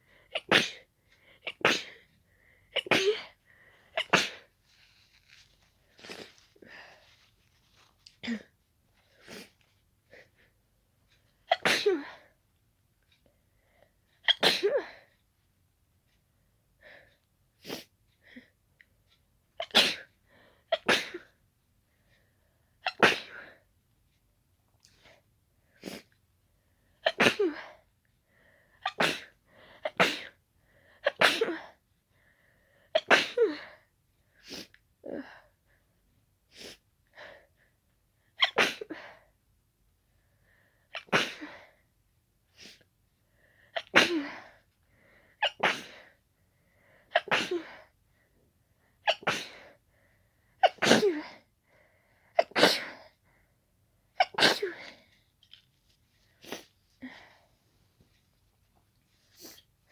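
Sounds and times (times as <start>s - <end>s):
person sneezing: 0.4s - 0.8s, 2.8s - 3.3s, 4.0s - 4.5s, 22.9s - 23.5s, 28.8s - 30.4s, 38.4s - 39.1s, 43.8s - 44.4s, 45.4s - 46.0s, 47.2s - 47.8s, 49.1s - 49.7s, 50.6s - 51.4s, 54.2s - 55.0s.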